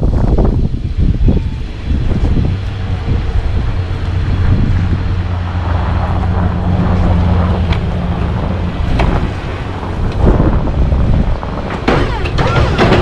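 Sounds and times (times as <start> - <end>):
vehicle engine humming: 0.0 - 13.0
wind noise on microphone: 0.0 - 13.0
sharp knocks: 11.6 - 13.0.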